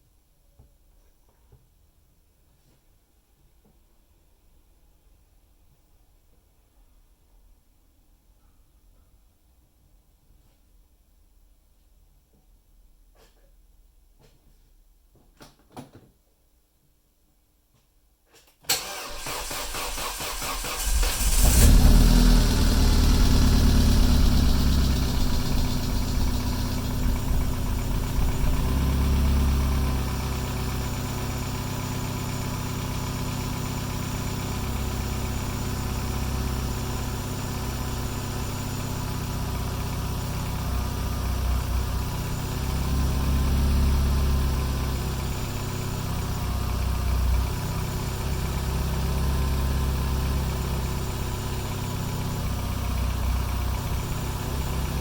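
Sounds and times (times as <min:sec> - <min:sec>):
car engine idling: 0:19.4 - 0:55.0.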